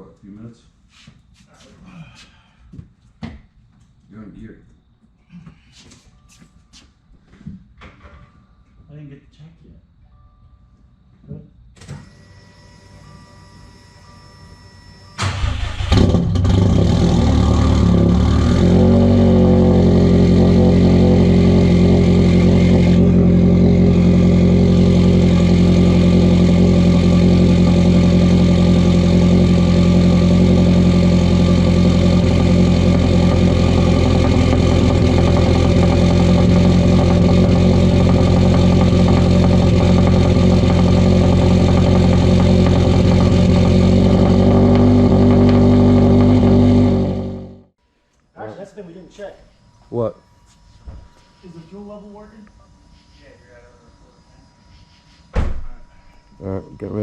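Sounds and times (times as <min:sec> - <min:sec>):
car engine starting and idling: 0:15.1 - 0:47.8.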